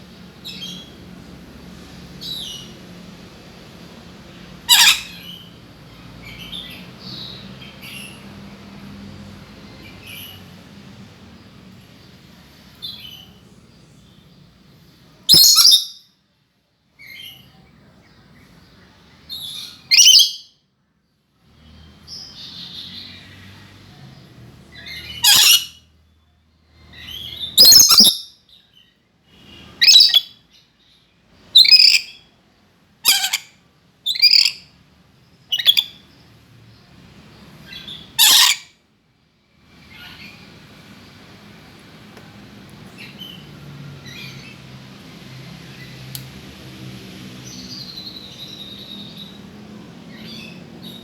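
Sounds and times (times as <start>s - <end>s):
faint bird calls: 4.6s - 5.5s, 19.3s - 20.4s, 31.6s - 32.3s, 33.0s - 34.7s
parrot screeching: 4.7s - 5.4s, 15.3s - 15.9s, 19.9s - 20.4s, 25.0s - 25.8s, 27.6s - 28.3s, 29.8s - 30.3s, 31.6s - 32.2s, 33.0s - 33.5s, 34.1s - 34.6s, 35.5s - 35.9s, 38.2s - 38.7s.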